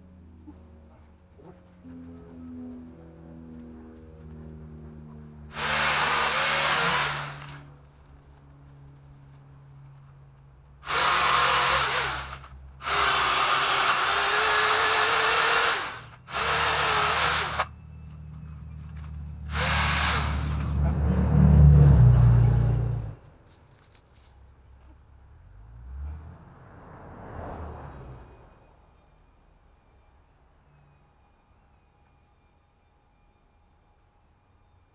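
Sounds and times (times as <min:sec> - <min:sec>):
pole saw motor whining: 0:04.8 - 0:07.8, 0:10.8 - 0:23.2.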